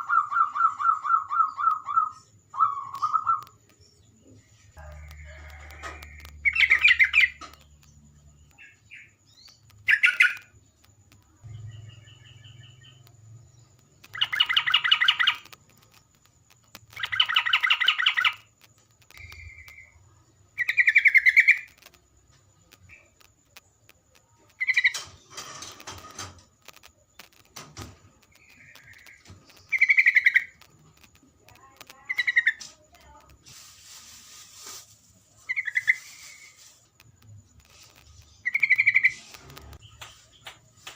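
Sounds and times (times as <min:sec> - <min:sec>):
bird chattering song: 0:00.0 - 0:04.5, 0:06.2 - 0:10.6, 0:11.4 - 0:15.7, 0:16.9 - 0:18.5, 0:19.1 - 0:21.9, 0:24.4 - 0:25.1, 0:28.2 - 0:33.2, 0:35.4 - 0:36.8, 0:37.7 - 0:40.9.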